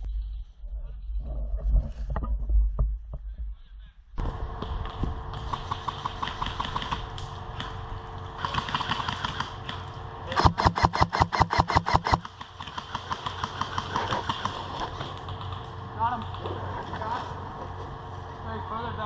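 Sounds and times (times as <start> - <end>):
airsoft guns firing bursts: 4.5 - 17.3.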